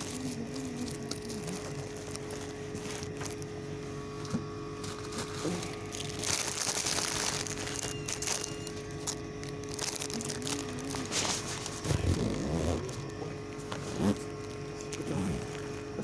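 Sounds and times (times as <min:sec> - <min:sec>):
rustle of handling: 0:00.0 - 0:16.0
steady electrical hum: 0:00.0 - 0:16.0.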